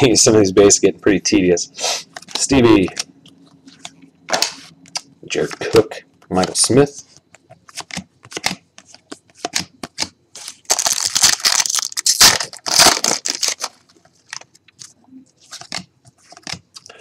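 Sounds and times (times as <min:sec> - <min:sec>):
cards rustling: 0:07.6 - 0:16.9
trading cards flipped through: 0:07.6 - 0:16.9.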